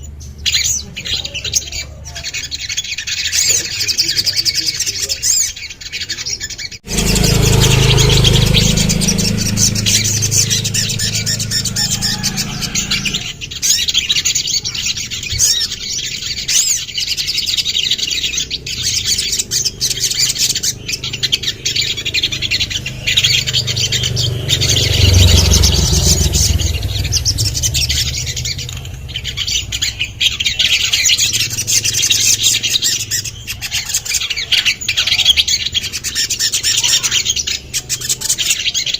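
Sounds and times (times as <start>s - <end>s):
bird chirping and trilling: 0.0s - 38.9s
low rumble: 6.8s - 13.4s, 19.3s - 33.2s.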